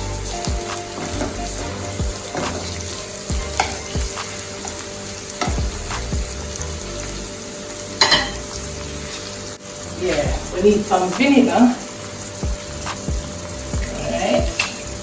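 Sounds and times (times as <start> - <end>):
vegetables sizzling in oil: 0.0 - 15.0
spoon scraping a pan: 2.2 - 4.8, 8.0 - 9.4.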